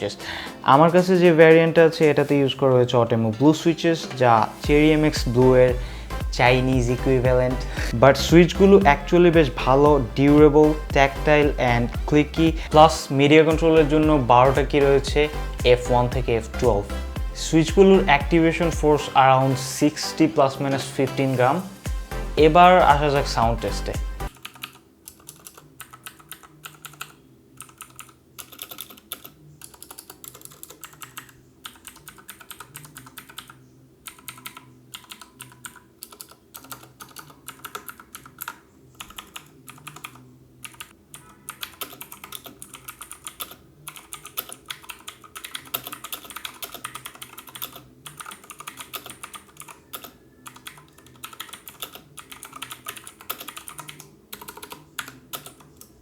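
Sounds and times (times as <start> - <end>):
clicky mechanical keyboard typing: 24.3 - 56.0.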